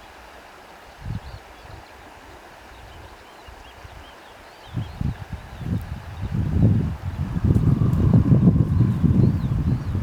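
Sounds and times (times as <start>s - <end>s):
wind buffeting microphone: 1.0s - 1.9s, 4.7s - 10.0s.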